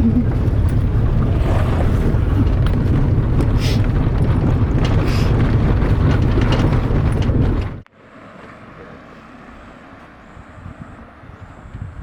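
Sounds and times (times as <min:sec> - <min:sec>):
wind buffeting microphone: 0:00.0 - 0:07.8, 0:10.2 - 0:12.0
quiet outdoor ambience: 0:07.8 - 0:12.0.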